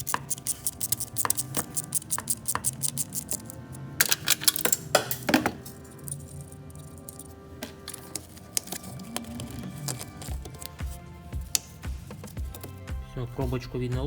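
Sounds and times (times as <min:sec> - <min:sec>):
tools clicking against metal: 0:00.0 - 0:10.8
background music: 0:00.0 - 0:14.0.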